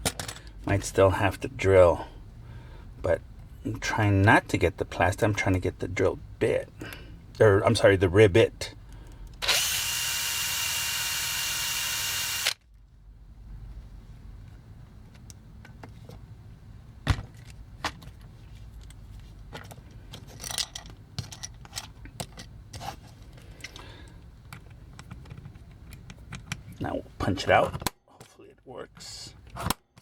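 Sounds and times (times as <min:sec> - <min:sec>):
cordless drill drilling: 0:09.4 - 0:12.6.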